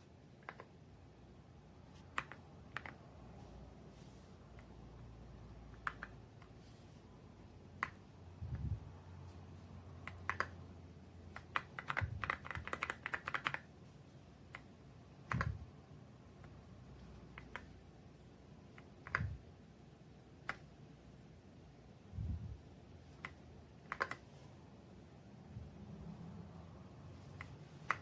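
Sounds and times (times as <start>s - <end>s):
mechanical keyboard keystrokes: 2.1s - 3.0s, 10.0s - 10.6s, 11.3s - 13.7s, 18.8s - 19.4s, 23.2s - 24.2s.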